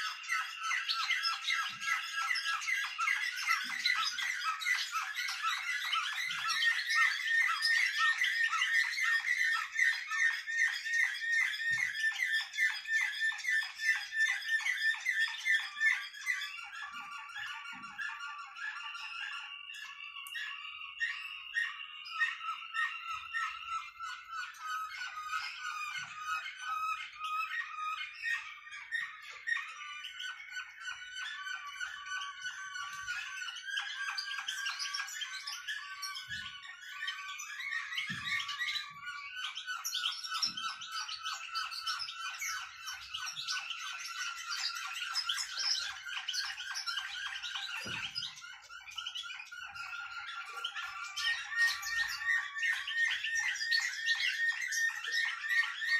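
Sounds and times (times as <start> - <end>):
finches twittering: 0.0 - 55.9.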